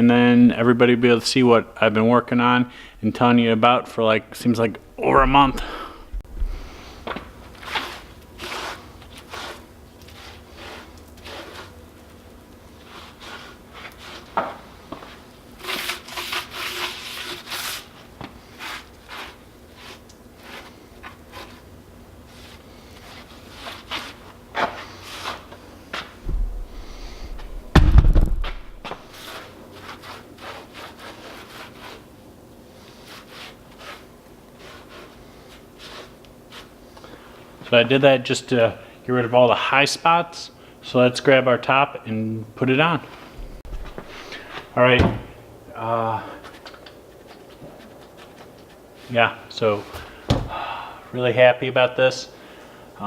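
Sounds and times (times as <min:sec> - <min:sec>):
heavy thump: 0:05.0 - 0:06.8, 0:26.2 - 0:29.1, 0:43.4 - 0:45.4.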